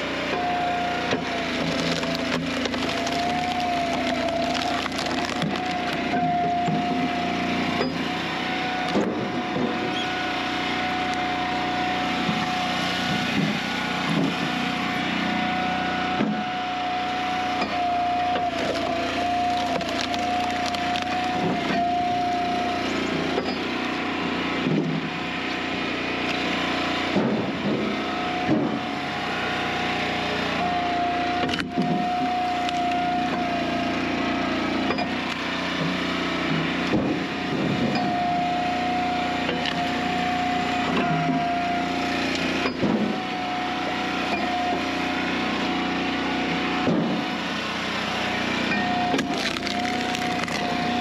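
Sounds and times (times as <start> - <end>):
wood splitter engine whine: 0.0 - 51.0
logs cracking and splintering: 0.9 - 7.1, 8.6 - 9.8, 16.1 - 23.5, 29.6 - 33.5, 48.0 - 51.0.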